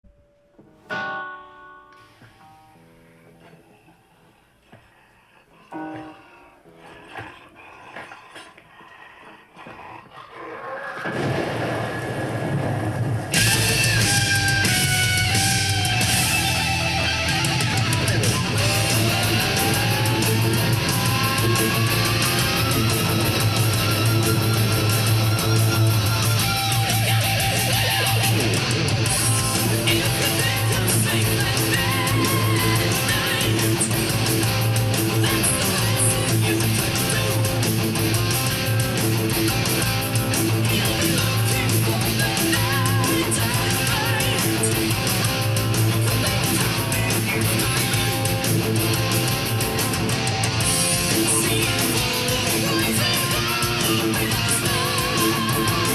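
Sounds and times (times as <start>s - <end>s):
distorted electric guitar riffing: 5.6s - 6.9s, 11.0s - 55.9s
drum beat: 13.2s - 55.9s.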